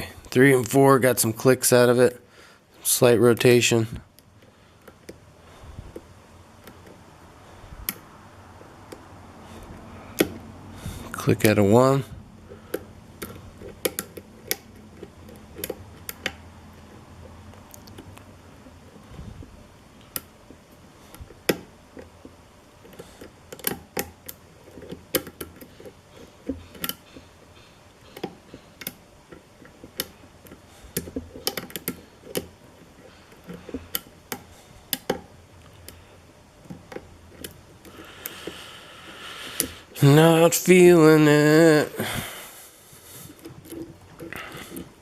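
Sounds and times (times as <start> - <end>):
lock pick clicking on pins: 12.5 - 18.3, 20.0 - 38.6.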